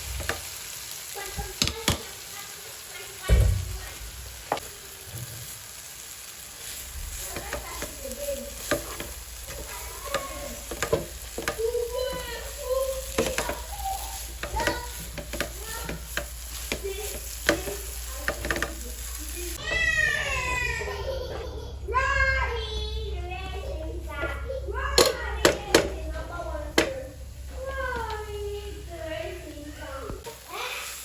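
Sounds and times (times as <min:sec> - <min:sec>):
noodles sizzling in a pan: 0:00.0 - 0:21.3, 0:23.2 - 0:31.0
utensil scraping a pan: 0:06.6 - 0:19.8.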